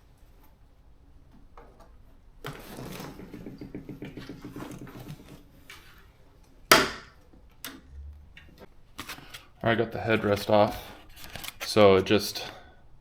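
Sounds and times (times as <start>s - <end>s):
hands rattling and rubbing car seat parts: 2.5s - 5.5s
sharp knock: 6.7s - 7.1s.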